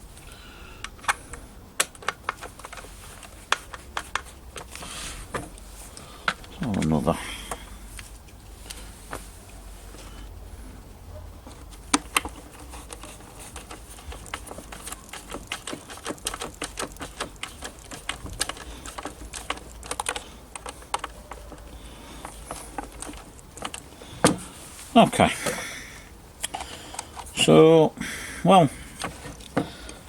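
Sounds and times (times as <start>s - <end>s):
screwdriver clicking and ticking: 11.9s - 23.8s.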